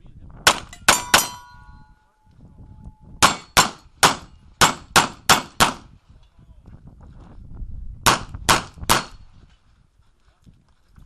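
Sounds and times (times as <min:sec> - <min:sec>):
pistol shots: 0:00.5 - 0:01.6, 0:03.2 - 0:05.8, 0:08.1 - 0:09.2
steel target ringing: 0:00.5 - 0:02.3.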